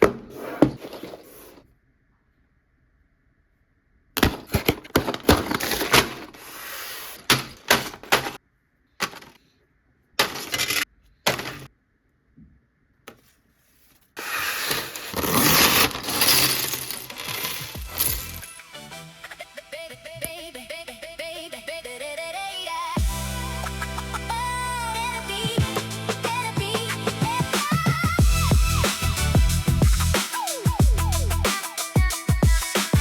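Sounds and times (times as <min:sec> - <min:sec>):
plastic pieces clattering: 0:04.2 - 0:06.5, 0:07.3 - 0:08.4, 0:09.0 - 0:09.4, 0:10.2 - 0:11.7, 0:14.2 - 0:18.5
packaging rustling: 0:04.2 - 0:08.4, 0:09.0 - 0:09.4, 0:14.2 - 0:18.5.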